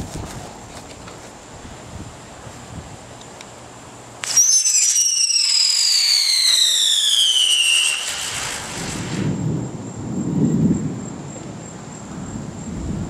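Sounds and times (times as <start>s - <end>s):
whistling firework: 4.2s - 10.9s.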